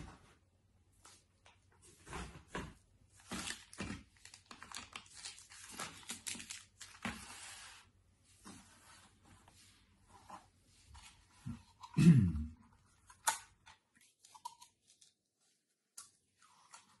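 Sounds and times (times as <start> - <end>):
packaging crinkling and tearing: 3.2 - 7.6.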